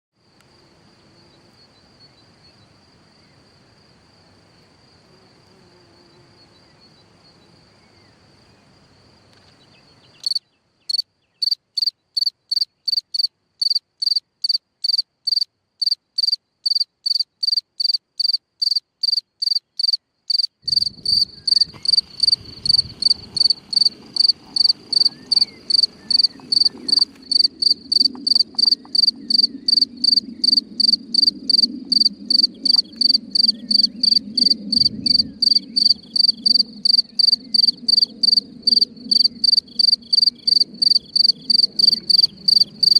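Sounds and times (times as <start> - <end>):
cricket chirping: 0.2 - 42.9
low rumble: 20.7 - 36.8.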